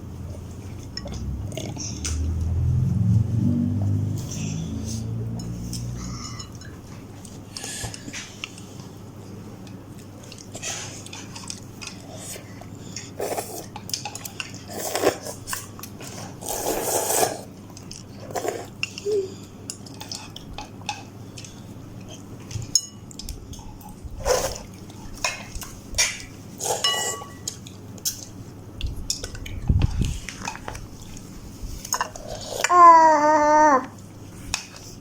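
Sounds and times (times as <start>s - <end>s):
utensils clinking against bowl: 5.3s - 8.2s, 22.4s - 23.9s, 25.2s - 28.4s.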